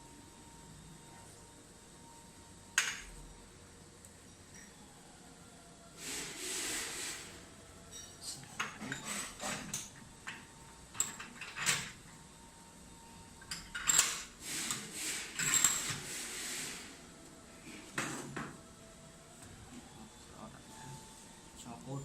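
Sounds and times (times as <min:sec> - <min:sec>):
metal parts clinking and scraping: 0:08.8 - 0:09.8.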